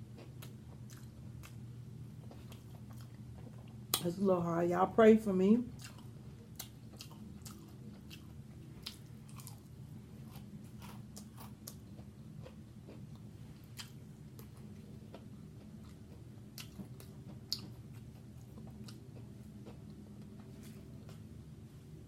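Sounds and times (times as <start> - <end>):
person chewing food: 0.0 - 4.0, 5.7 - 21.4.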